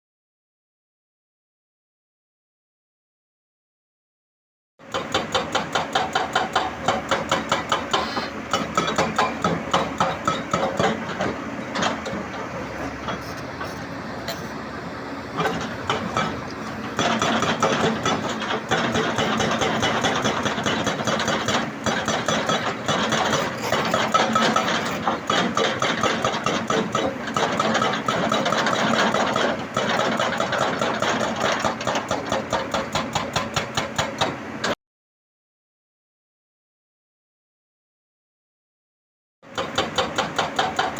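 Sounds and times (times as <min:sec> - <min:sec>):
excavator diesel engine clattering: 0:04.8 - 0:34.8, 0:39.4 - 0:40.9.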